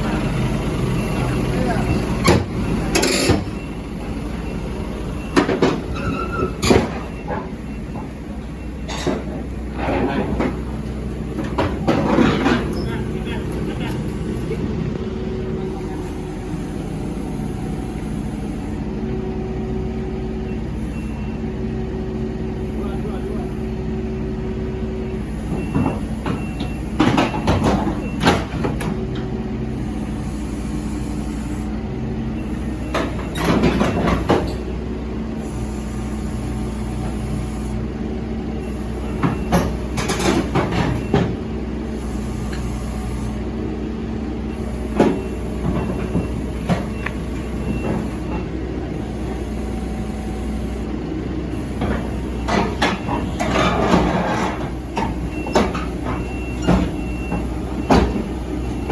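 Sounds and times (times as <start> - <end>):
metal clanking and squealing: 0.0 - 14.6, 51.6 - 58.9
diesel engine running: 0.0 - 58.9.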